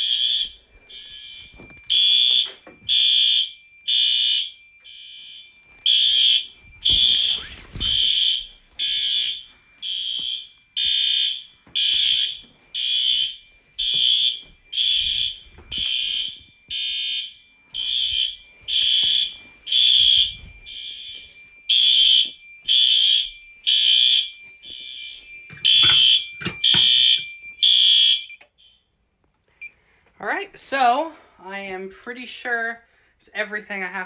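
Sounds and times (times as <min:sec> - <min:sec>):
fire alarm horns pulsing: 0:00.0 - 0:28.9
faint steady high tone: 0:05.7 - 0:08.8.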